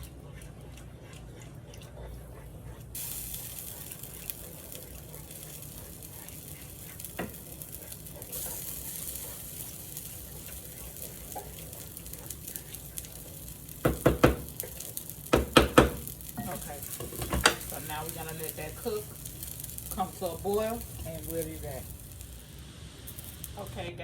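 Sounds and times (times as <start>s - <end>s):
sauce hissing in a pot: 2.8s - 24.0s
spoon knocking against pot: 13.8s - 14.5s, 15.3s - 16.1s.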